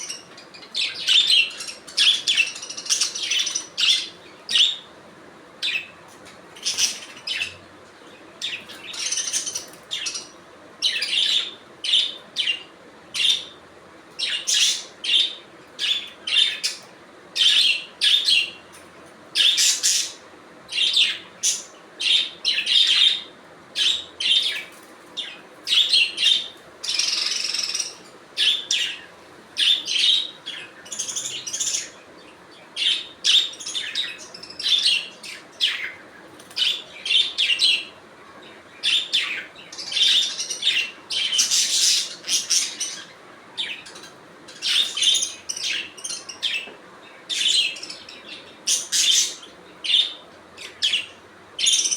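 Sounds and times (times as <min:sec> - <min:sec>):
budgerigars chirping: 0:00.0 - 0:04.9, 0:08.4 - 0:13.6, 0:19.4 - 0:32.0, 0:32.8 - 0:36.0, 0:38.8 - 0:46.7, 0:47.3 - 0:51.9.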